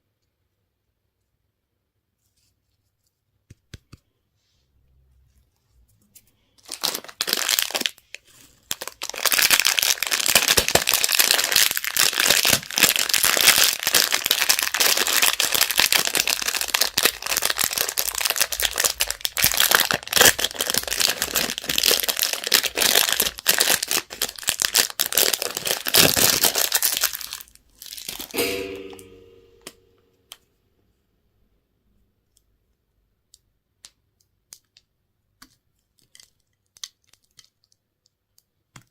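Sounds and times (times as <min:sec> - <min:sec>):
candy wrapper crinkling: 0:06.2 - 0:28.4, 0:33.3 - 0:38.9.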